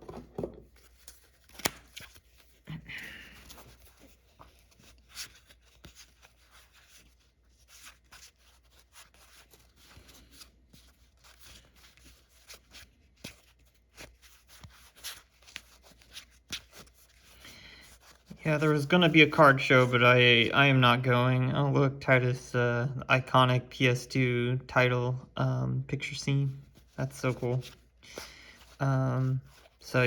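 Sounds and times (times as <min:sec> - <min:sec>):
card rustle: 0:00.0 - 0:20.5, 0:26.2 - 0:30.0
cards sliding and clicking: 0:00.1 - 0:02.6.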